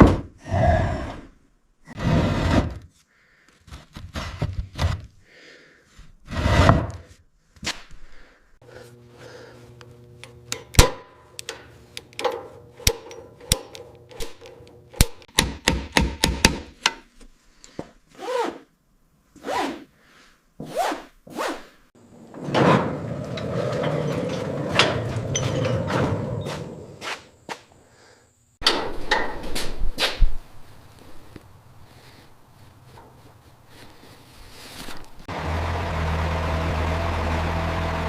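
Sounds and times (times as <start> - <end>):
tools and metal parts knocking: 10.5 - 17.1.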